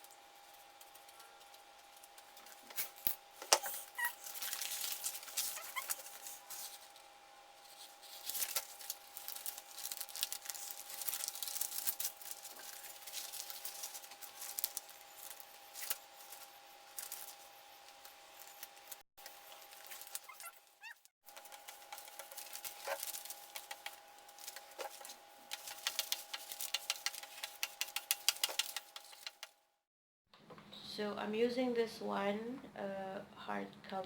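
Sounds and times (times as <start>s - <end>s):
paper crinkling and rustling: 2.0s - 7.0s, 7.6s - 29.5s.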